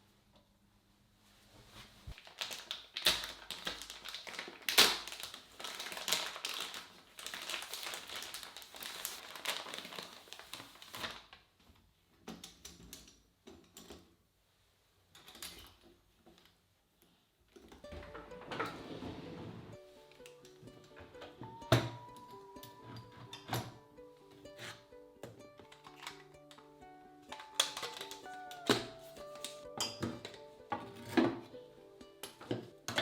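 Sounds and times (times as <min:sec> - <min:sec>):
handling clicks taps and crinkles: 0:24.3 - 0:33.0.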